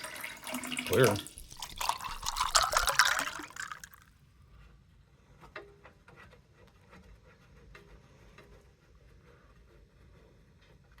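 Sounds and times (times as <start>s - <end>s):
gasoline pouring and splashing: 0.0s - 4.2s.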